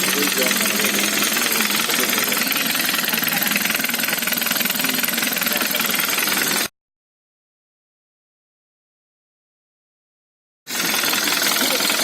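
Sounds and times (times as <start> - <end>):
engine metallic knocking: 0.0 - 6.7, 10.7 - 12.0.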